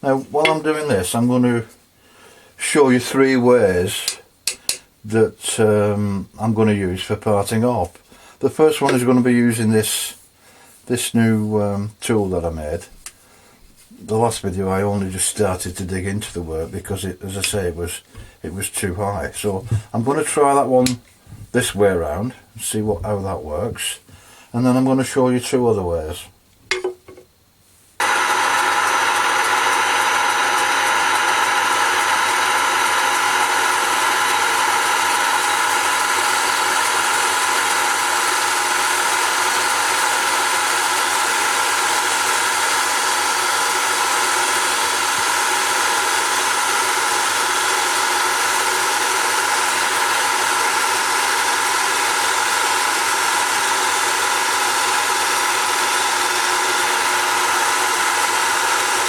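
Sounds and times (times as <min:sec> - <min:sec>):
wood lathe humming and whining: 0:28.0 - 0:59.0.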